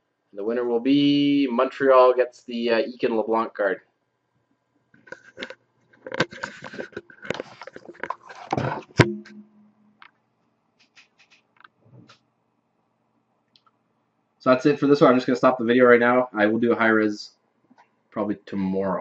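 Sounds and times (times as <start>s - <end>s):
things handled on a table: 5.0s - 9.1s.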